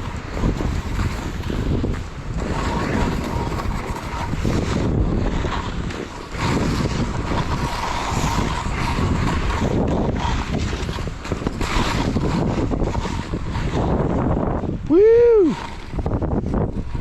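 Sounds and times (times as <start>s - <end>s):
skis hissing over snow: 0.0s - 17.0s
wind buffeting microphone: 0.0s - 17.0s.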